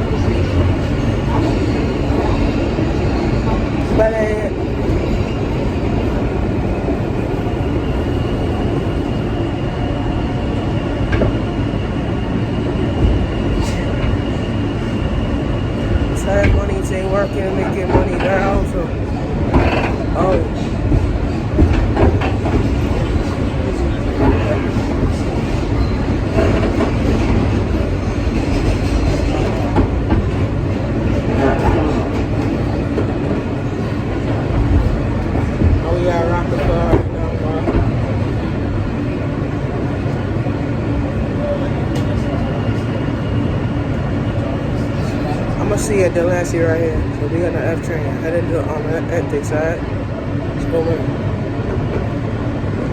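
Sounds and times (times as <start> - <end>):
subway wheels rolling on rail: 0.0 - 52.9
rail clicks: 12.9 - 38.4.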